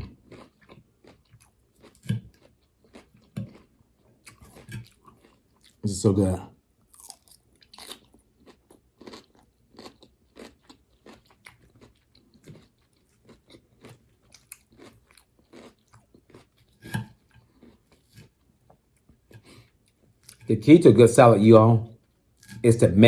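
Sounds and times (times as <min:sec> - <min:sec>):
crunching and chewing salad: 0:00.0 - 0:22.9.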